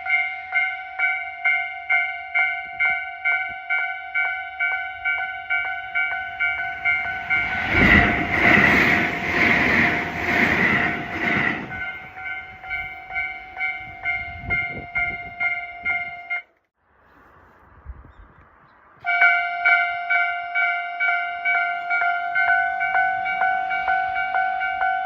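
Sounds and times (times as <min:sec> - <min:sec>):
level crossing bell ringing: 0:00.0 - 0:08.2, 0:11.7 - 0:16.4, 0:19.2 - 0:25.0
train wheels clattering: 0:05.7 - 0:16.1.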